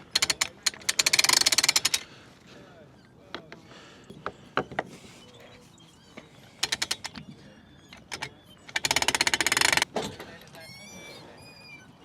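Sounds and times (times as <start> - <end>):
rapid ratchet-like clicking: 0.0 - 2.1, 6.6 - 7.2, 8.0 - 9.9
mechanical clicks: 8.0 - 9.9.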